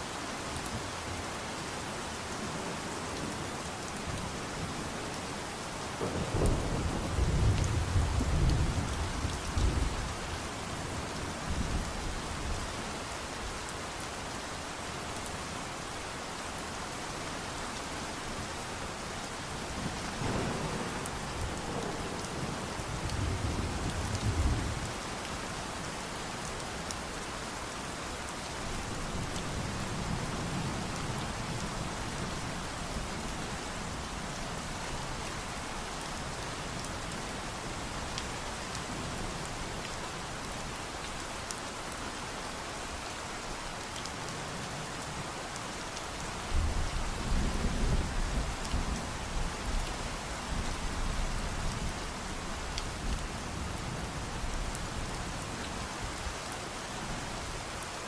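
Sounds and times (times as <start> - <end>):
steady rain falling: 0.0 - 58.0
thunder rumbling: 19.7 - 24.8.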